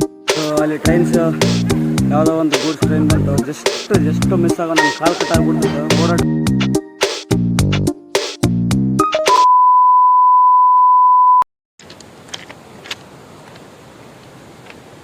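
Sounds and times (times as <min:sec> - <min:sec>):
background music: 0:00.0 - 0:09.5.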